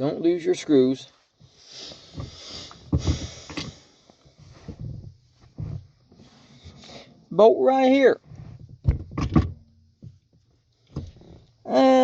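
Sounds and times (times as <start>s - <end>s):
knocks and clicks of car trim: 2.1s - 3.8s, 8.3s - 11.4s.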